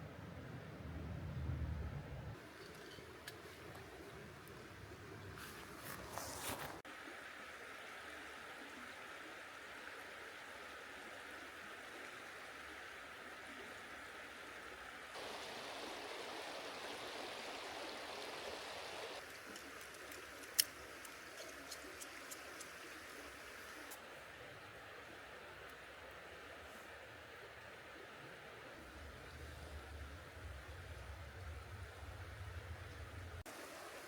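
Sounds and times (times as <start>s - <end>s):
mountain stream flowing: 2.4s - 34.0s
light ticks: 19.2s - 22.9s.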